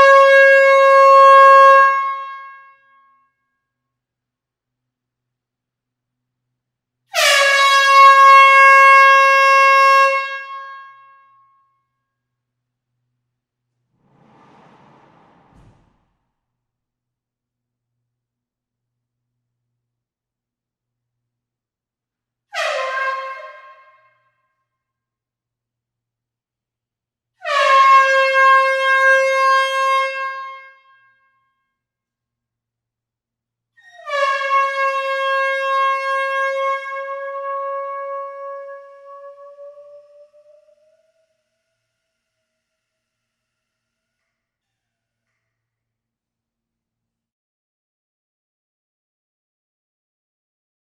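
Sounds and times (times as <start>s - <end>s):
air horn blast: 7.1s - 11.1s, 22.5s - 24.1s, 27.4s - 30.8s.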